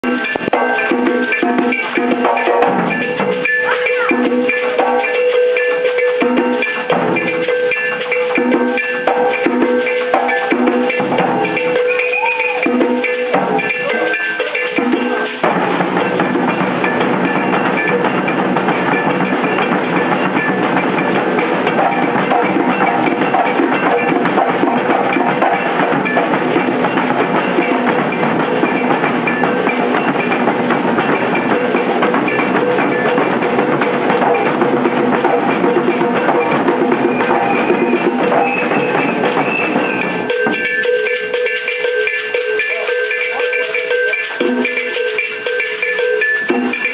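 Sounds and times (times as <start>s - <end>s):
percussion ensemble drumming: 0.0s - 46.9s.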